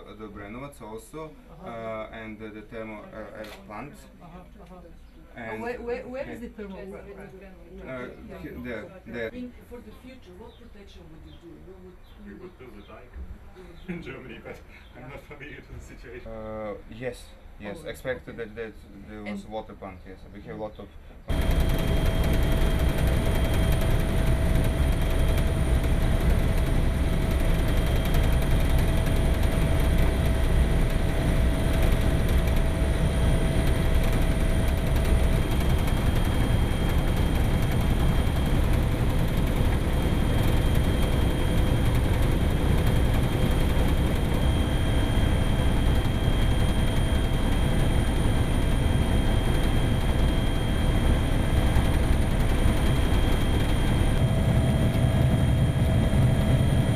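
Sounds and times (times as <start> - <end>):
engine rumble with high whine: 21.3 - 56.9.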